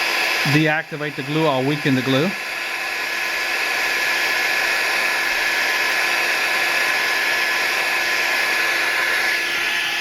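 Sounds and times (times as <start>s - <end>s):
heat gun blowing: 0.0s - 10.0s.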